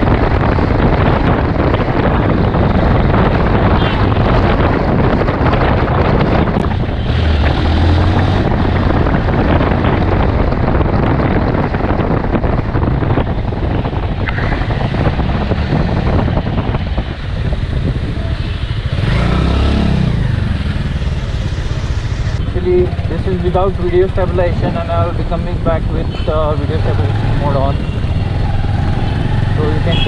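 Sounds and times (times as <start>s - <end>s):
motorcycle engine running: 0.0s - 30.0s
road noise: 0.0s - 30.0s
wind rush: 0.0s - 30.0s.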